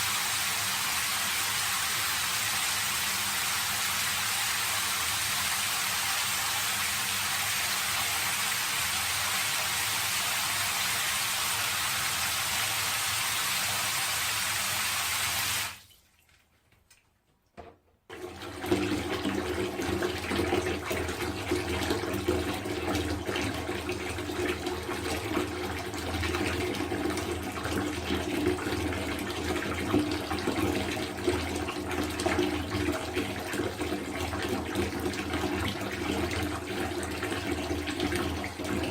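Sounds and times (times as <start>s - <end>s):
water drips and splashes: 15.5s - 17.3s.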